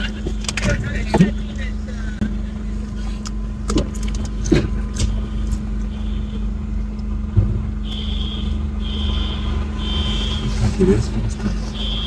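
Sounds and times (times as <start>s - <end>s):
fire engine idling: 0.0s - 12.0s.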